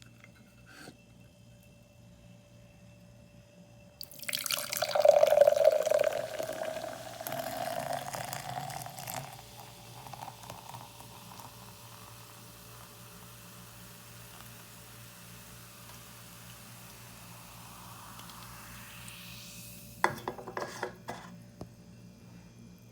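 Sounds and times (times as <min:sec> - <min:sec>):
carbonation fizzing: 0:04.0 - 0:21.2.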